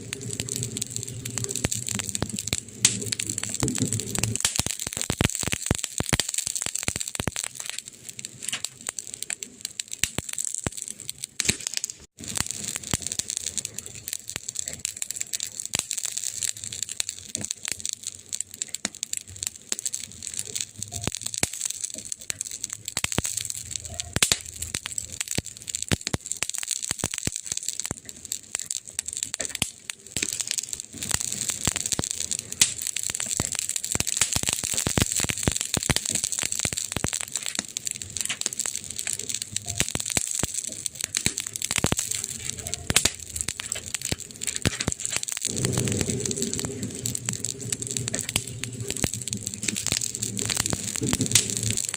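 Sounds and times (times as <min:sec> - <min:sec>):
low rumble: 0:00.0 - 0:04.4, 0:42.0 - 0:51.9
wood fire crackling: 0:00.0 - 0:51.9.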